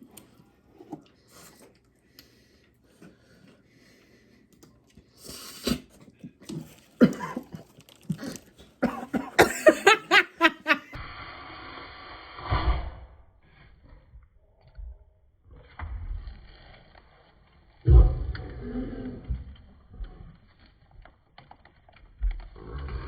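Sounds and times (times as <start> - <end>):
person coughing: 7.0 - 10.3.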